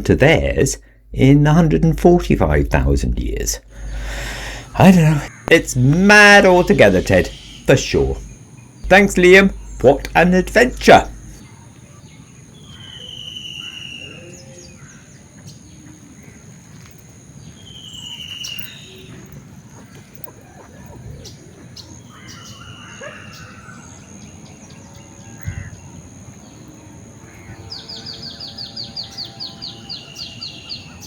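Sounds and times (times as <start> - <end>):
high insect-like drone: 3.8 - 11.5
birds whistling and chirping: 3.8 - 15.8, 17.4 - 26.0, 27.4 - 31.0.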